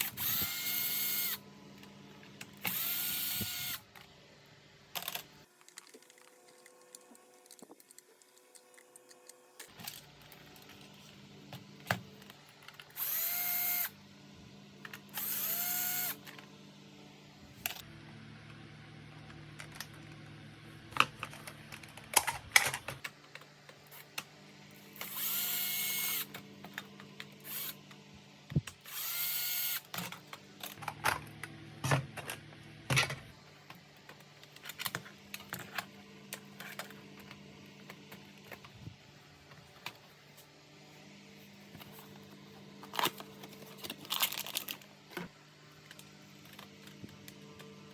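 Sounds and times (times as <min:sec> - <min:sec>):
electric screwdriver whining: 0:00.0 - 0:01.4, 0:02.6 - 0:03.9, 0:12.8 - 0:13.9, 0:15.1 - 0:16.3, 0:25.0 - 0:26.3, 0:27.4 - 0:27.8, 0:28.8 - 0:29.9
plastic parts and screws clicking: 0:00.0 - 0:04.1, 0:04.9 - 0:11.1, 0:21.0 - 0:24.3, 0:42.8 - 0:47.7.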